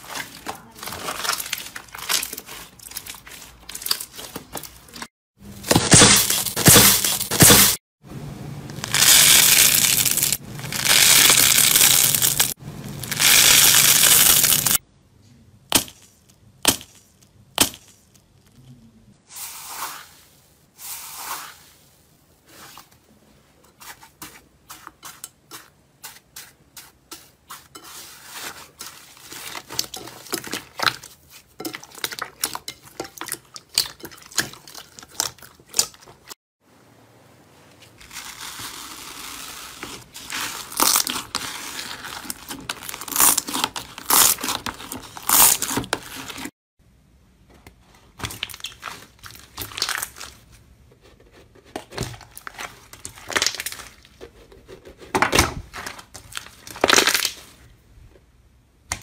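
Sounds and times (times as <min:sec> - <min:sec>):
slime crunching and crackling: 0:00.0 - 0:05.1, 0:08.8 - 0:14.8, 0:38.0 - 0:46.5, 0:48.2 - 0:50.5, 0:52.2 - 0:54.2, 0:55.7 - 0:57.6.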